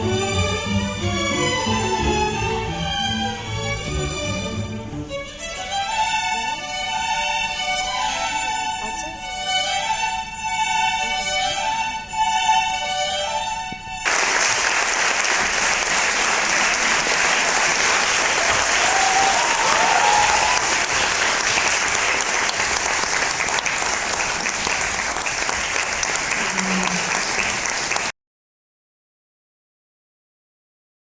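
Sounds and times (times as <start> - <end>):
violin-led string music: 0.0 - 14.1
audience applauding: 14.0 - 28.1.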